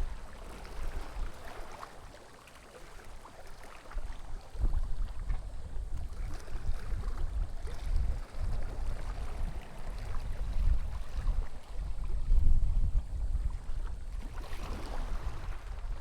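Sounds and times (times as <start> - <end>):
sea waves lapping: 0.0 - 11.8, 13.5 - 16.0
wind buffeting microphone: 4.0 - 16.0.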